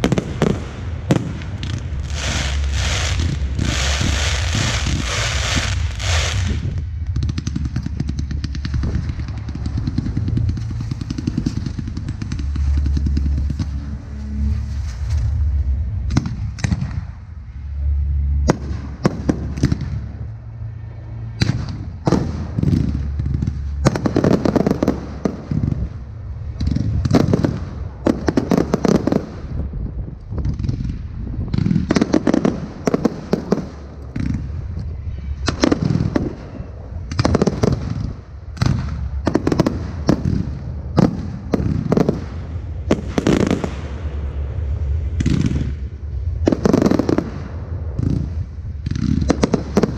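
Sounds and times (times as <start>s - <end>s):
firework shells bursting: 0.0s - 13.9s.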